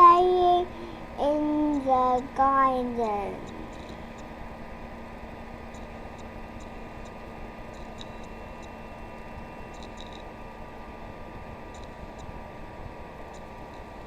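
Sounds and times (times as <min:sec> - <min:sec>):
faint constant hum: 0:00.0 - 0:14.0
steady low hiss: 0:00.0 - 0:14.0
faint high ticks: 0:05.7 - 0:10.3, 0:11.7 - 0:12.3.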